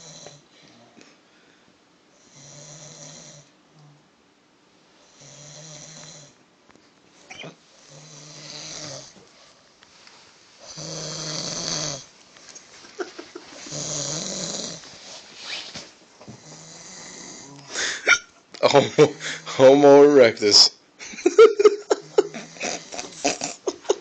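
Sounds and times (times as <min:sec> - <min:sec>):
person snoring: 0:00.0 - 0:00.4, 0:05.1 - 0:06.4, 0:07.4 - 0:09.2, 0:10.6 - 0:12.1, 0:13.6 - 0:14.8, 0:16.4 - 0:18.2, 0:19.0 - 0:19.6, 0:21.9 - 0:24.0.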